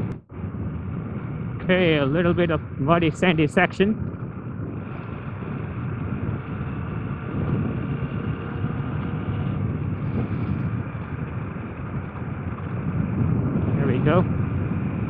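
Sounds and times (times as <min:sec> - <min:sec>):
motorcycle engine running: 0:00.0 - 0:15.0
wind rushing over microphone: 0:00.0 - 0:15.0.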